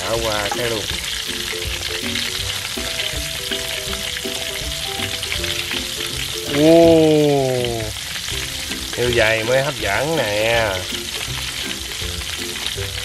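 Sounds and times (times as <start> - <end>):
oil sizzling in pan: 0.0 - 13.0.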